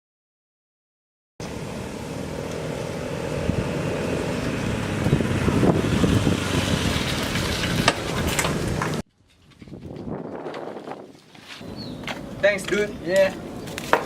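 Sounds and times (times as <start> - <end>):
wind noise on microphone: 3.3 - 14.0.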